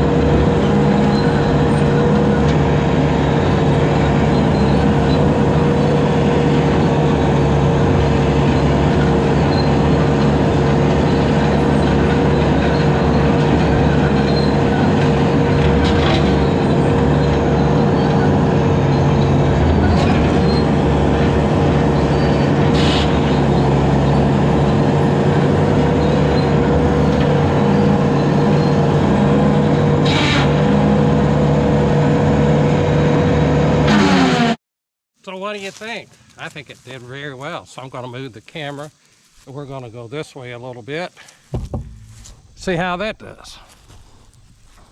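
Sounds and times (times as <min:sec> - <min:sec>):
brush cutter whine: 0:00.0 - 0:34.6
diesel engine running: 0:00.0 - 0:34.6.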